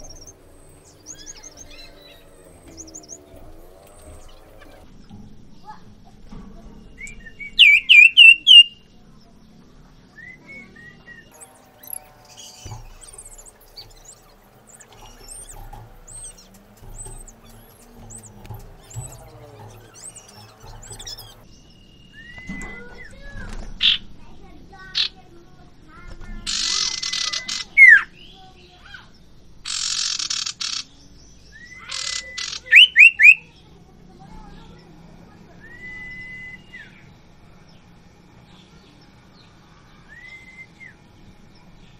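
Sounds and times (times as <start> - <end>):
songbird whistled notes: 0.0 - 4.8, 6.9 - 8.9, 10.1 - 23.2, 29.7 - 33.6, 35.5 - 37.1, 40.0 - 41.0
soft bird chirps: 0.0 - 24.0, 25.9 - 41.9
soft low thumps: 12.0 - 21.4.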